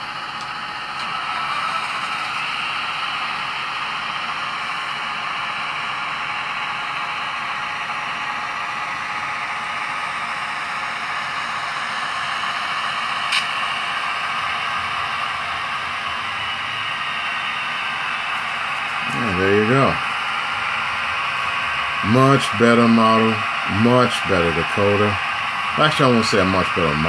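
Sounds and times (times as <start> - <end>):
model locomotive engine sound: 0.0 - 27.0
sharp click: 13.3 - 13.5.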